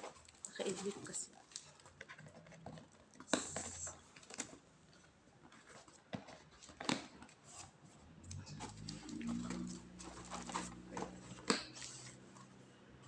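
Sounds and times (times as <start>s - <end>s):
packaging rustle: 8.5s - 12.3s.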